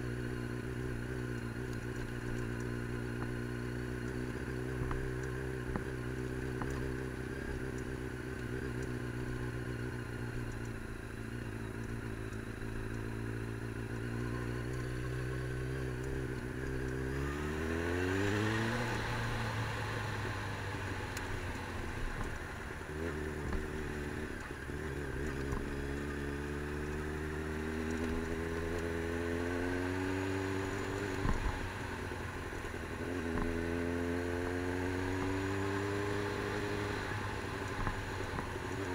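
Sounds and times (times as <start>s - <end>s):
vehicle engine revving: 0.0s - 38.9s.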